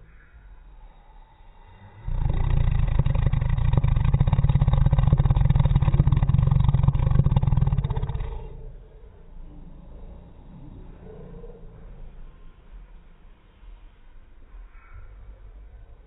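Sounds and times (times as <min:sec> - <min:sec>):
man snoring: 0:02.0 - 0:08.8.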